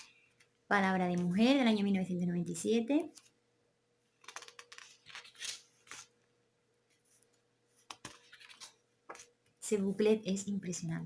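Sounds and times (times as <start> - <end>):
stiff paper pages rustling: 4.2 - 6.2, 6.9 - 9.3.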